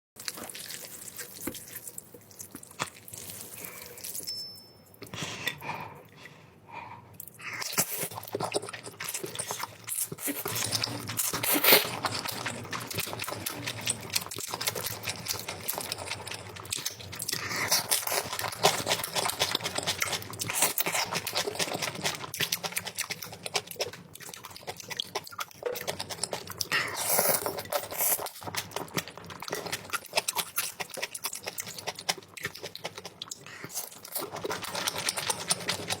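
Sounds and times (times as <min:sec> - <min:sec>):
wet chewing and biting: 0:07.6 - 0:36.0.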